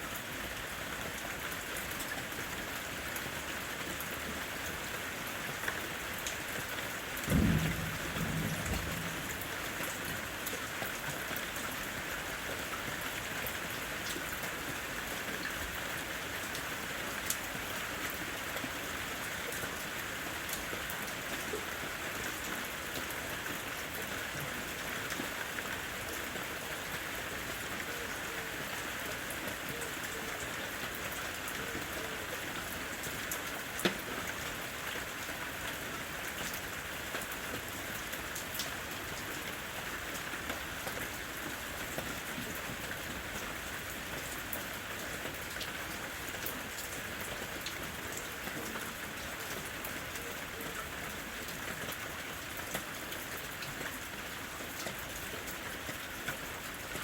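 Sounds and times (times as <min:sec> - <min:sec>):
steady rain falling: 0:00.0 - 0:57.0
single loud raindrop: 0:07.3 - 0:10.0.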